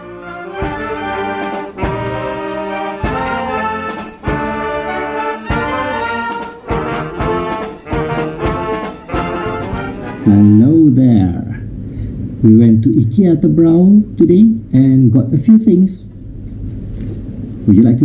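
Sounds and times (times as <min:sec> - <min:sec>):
brass intro music: 0:00.0 - 0:10.7.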